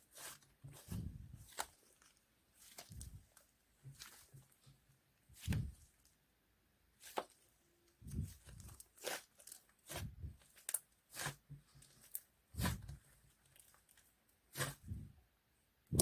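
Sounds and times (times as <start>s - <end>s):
slime squelching and popping: 8.1s - 14.9s.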